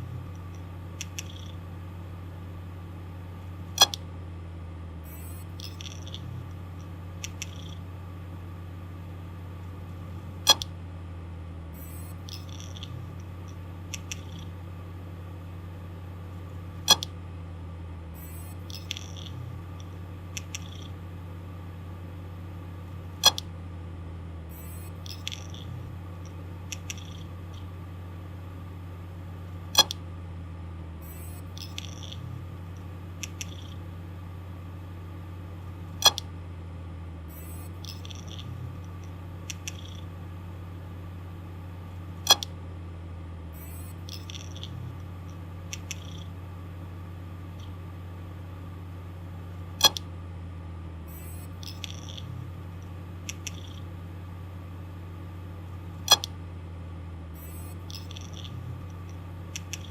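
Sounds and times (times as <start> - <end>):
hard disk drive humming: 0.0 - 59.9
faint ticks: 0.3 - 1.6, 5.4 - 7.8, 31.5 - 33.8, 37.7 - 40.1, 44.0 - 46.3, 51.5 - 53.9, 57.7 - 59.9
hard drive loud sharp click: 3.8 - 4.1, 10.4 - 10.8, 16.8 - 17.2, 23.2 - 23.5, 29.7 - 30.0, 36.0 - 36.3, 42.2 - 42.6, 49.8 - 50.1, 56.0 - 56.4.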